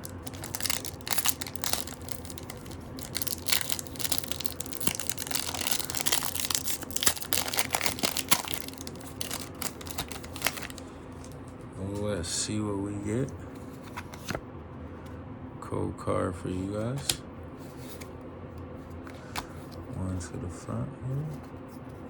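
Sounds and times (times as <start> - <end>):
foil wrapper tearing and crinkling: 0.0 - 11.4.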